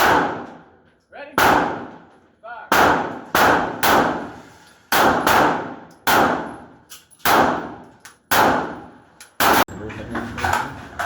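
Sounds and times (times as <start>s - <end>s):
gunshots echoing: 0.0s - 0.8s, 1.4s - 2.1s, 2.7s - 9.7s.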